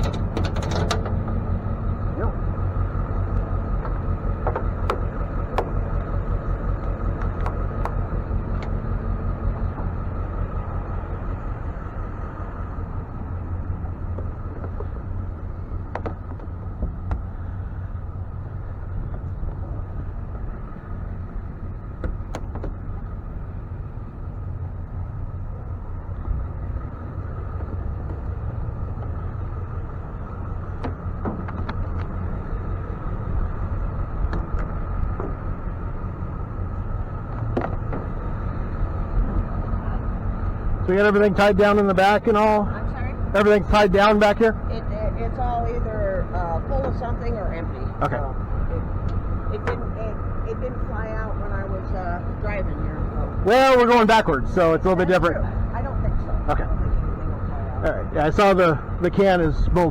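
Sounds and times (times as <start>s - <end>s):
metallic clicks and knocks: 0.0s - 1.2s
constant whine: 0.0s - 59.9s
truck engine idling: 0.0s - 59.9s.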